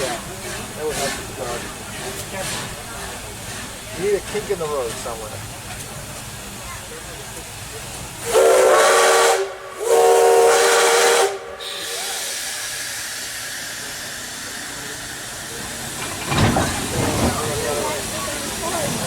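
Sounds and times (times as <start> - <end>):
steam hissing: 0.0 - 19.0
steam locomotive whistle: 8.2 - 13.3.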